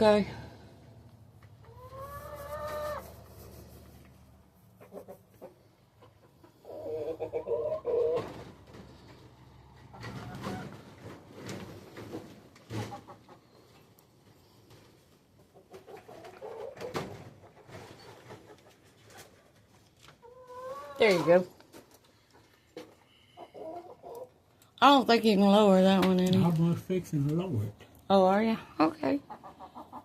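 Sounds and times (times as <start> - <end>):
chickens cooing: 1.6 - 3.2, 4.8 - 8.4.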